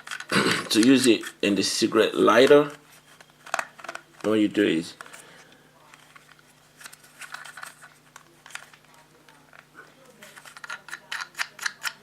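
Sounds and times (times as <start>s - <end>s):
plastic parts clicking and clattering: 0.0s - 1.3s, 3.4s - 4.4s, 5.9s - 8.9s, 10.3s - 12.0s.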